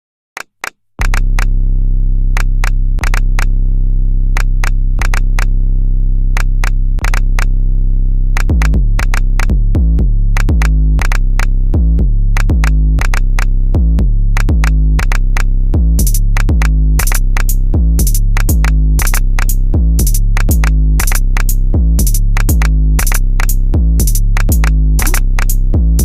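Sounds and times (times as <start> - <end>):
synthesizer bass line: 1.0 - 26.0
drum machine beat: 8.4 - 26.0.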